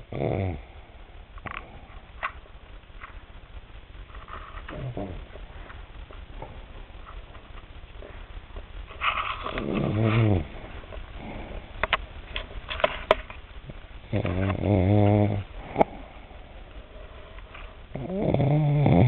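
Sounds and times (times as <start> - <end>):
woman snoring: 0.1 - 0.7, 9.6 - 10.6, 14.1 - 16.0, 17.9 - 19.0.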